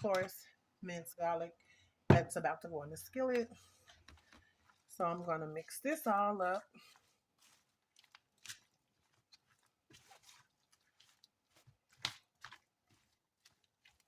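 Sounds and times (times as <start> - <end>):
raw chicken squishing: 4.1 - 5.4, 6.4 - 14.0.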